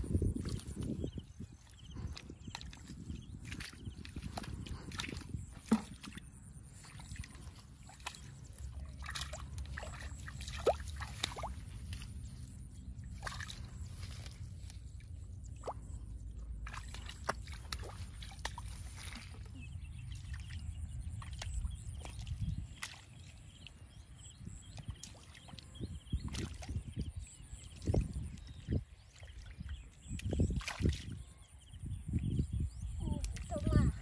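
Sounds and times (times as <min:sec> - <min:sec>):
steady low rumble: 0:00.0 - 0:22.8
water sloshing and splashing: 0:00.0 - 0:32.2, 0:33.0 - 0:34.0
sharp splashes: 0:01.7 - 0:23.4, 0:30.1 - 0:31.2.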